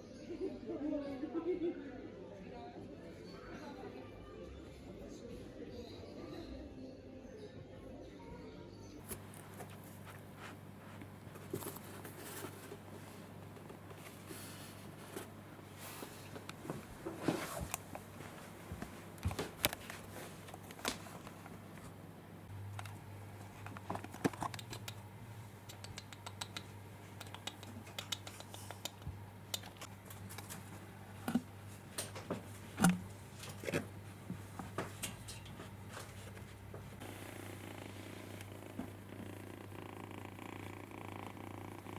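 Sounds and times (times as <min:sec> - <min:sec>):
steady low hum: 0:09.0 - 0:41.9
tapping and clicking: 0:23.7 - 0:30.5.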